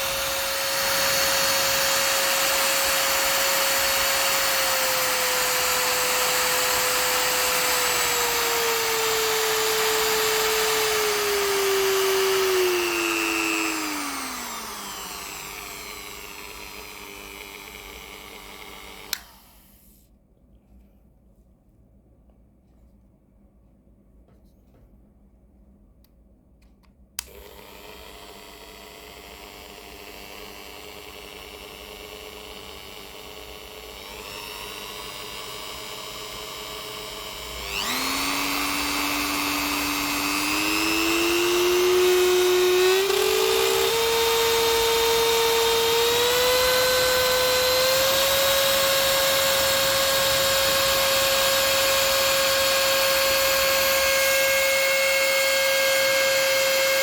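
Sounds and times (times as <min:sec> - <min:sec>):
rotary tool whine: 0:00.0 - 0:19.9, 0:27.2 - 0:57.0
rotary tool switch click: 0:19.1 - 0:19.4.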